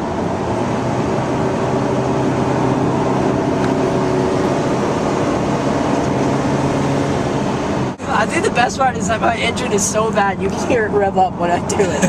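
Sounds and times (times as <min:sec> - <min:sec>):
car engine accelerating: 0:00.0 - 0:12.0
road noise: 0:00.0 - 0:12.0.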